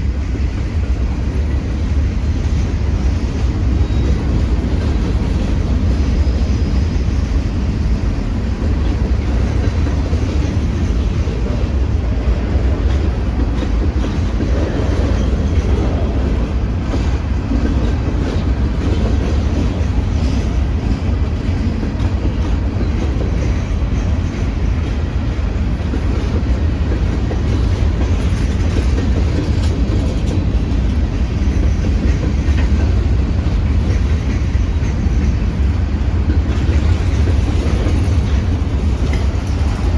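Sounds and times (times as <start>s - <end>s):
freight train wheels on rails: 0.0s - 39.9s.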